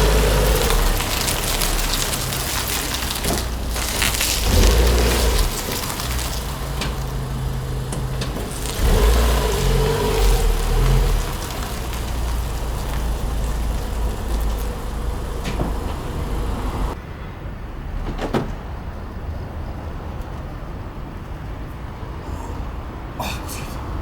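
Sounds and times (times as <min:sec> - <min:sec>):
car noise: 0:00.0 - 0:17.0.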